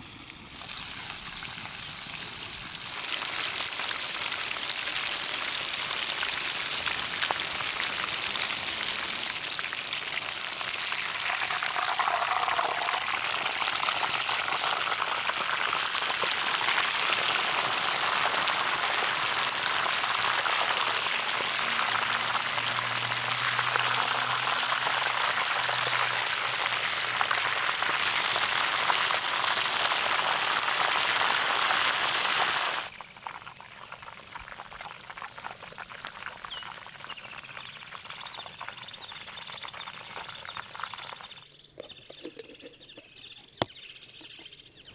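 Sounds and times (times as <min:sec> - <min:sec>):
chicken sizzling in hot oil: 0:00.0 - 0:41.4.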